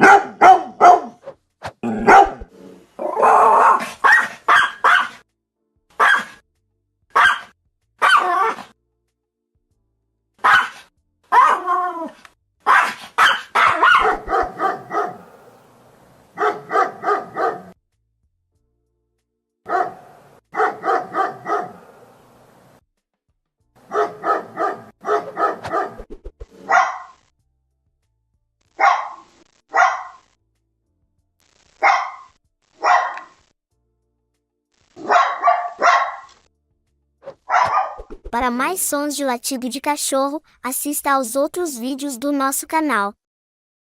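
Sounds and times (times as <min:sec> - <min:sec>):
dog barking: 0:00.0 - 0:01.2, 0:01.9 - 0:02.5, 0:03.2 - 0:05.2, 0:06.0 - 0:06.4, 0:07.1 - 0:08.7, 0:10.4 - 0:11.8, 0:12.6 - 0:15.4, 0:16.4 - 0:17.8, 0:19.7 - 0:22.0, 0:23.9 - 0:27.2, 0:28.8 - 0:30.2, 0:31.8 - 0:33.4, 0:35.0 - 0:36.3, 0:37.4 - 0:38.1.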